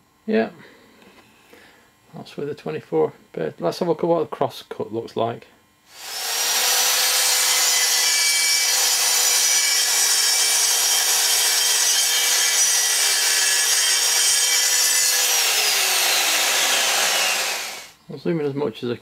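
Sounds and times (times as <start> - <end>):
track saw cutting plywood: 5.9 - 18.0.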